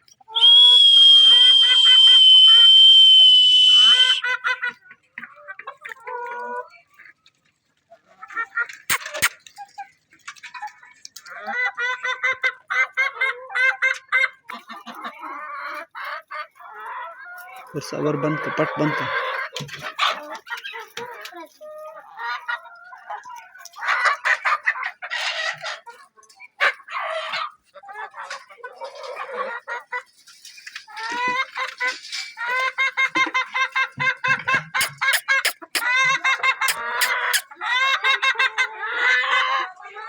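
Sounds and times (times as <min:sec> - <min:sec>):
hens clucking: 0:01.3 - 0:40.0
sharp clicks: 0:08.9 - 0:09.4, 0:34.8 - 0:35.9.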